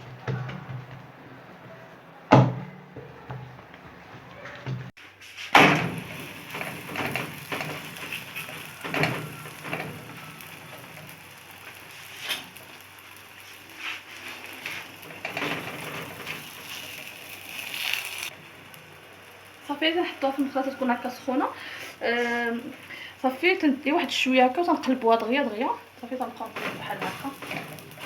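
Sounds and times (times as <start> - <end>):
sharp knocks and clatters: 0.0 - 11.2, 14.6 - 16.8
faint crackling hiss: 5.0 - 28.0.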